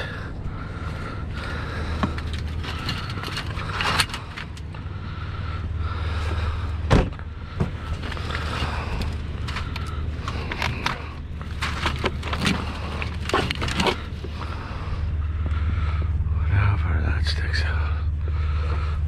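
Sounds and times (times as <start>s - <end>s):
vehicle engine idling: 0.0s - 19.0s
knocks and clatter of items handled: 2.0s - 4.7s, 6.9s - 14.4s.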